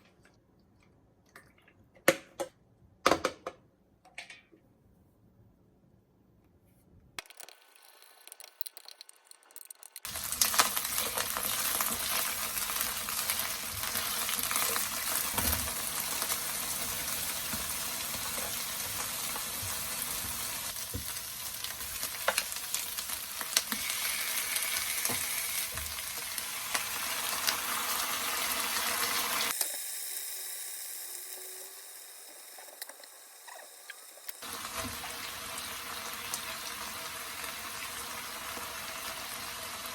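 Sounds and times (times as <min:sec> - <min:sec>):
food sizzling in a frying pan: 0:10.0 - 0:39.9.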